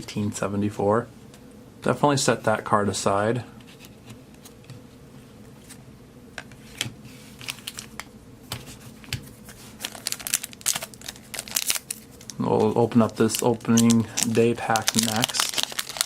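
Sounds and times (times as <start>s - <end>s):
cards being handled: 6.4s - 16.0s
wrapper crinkling: 7.4s - 8.0s, 9.7s - 16.0s.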